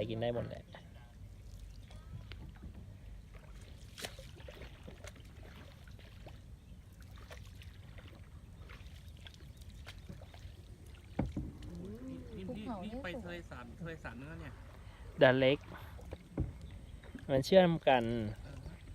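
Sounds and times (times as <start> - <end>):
low steady rumble: 0.0 - 18.9
water lapping against boat: 0.0 - 18.9
light knocks on boat: 11.1 - 11.7, 16.0 - 17.3.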